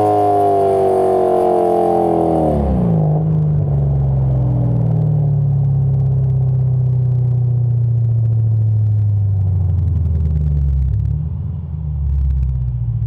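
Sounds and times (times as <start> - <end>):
car engine rumbling: 0.0 - 13.0.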